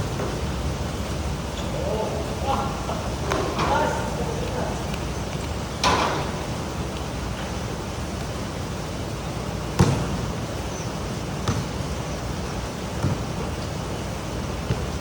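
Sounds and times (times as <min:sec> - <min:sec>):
heavy rain hissing: 0:00.0 - 0:15.0.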